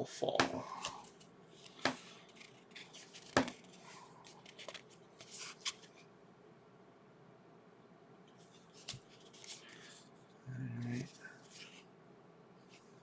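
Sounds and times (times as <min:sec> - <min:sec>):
cards rustling: 0:00.4 - 0:06.0.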